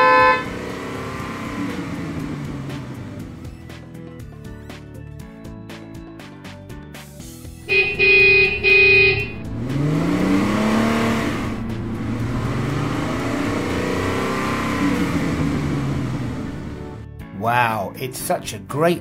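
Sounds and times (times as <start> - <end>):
car horn honking: 0.0 - 0.6, 7.6 - 16.7
car engines revving past: 0.0 - 3.3, 7.7 - 17.0.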